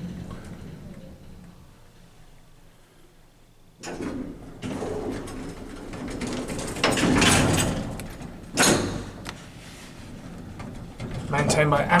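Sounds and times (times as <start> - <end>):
lift doors sliding: 0.0 - 2.3, 3.8 - 12.0
lift doors shutting with thud: 3.8 - 12.0.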